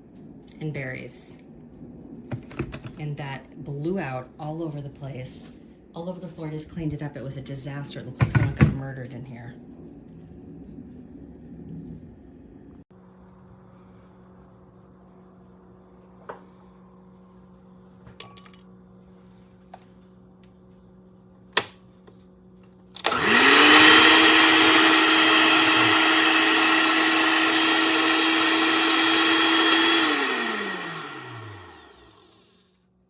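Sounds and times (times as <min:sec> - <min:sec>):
blender motor whirring: 0:23.0 - 0:32.7.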